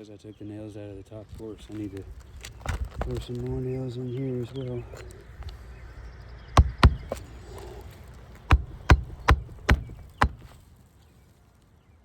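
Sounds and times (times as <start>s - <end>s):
hammer driving nails into shingles: 6.6s - 10.6s.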